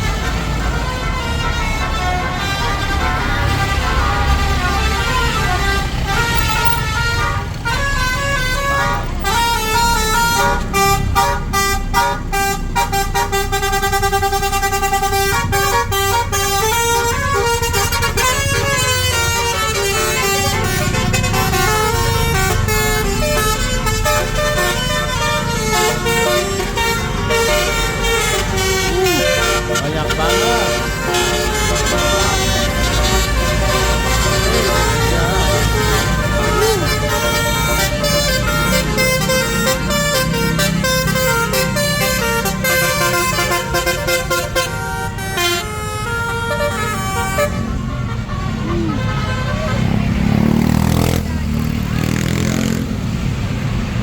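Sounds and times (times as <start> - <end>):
musical air horn tune: 0.0 - 49.9.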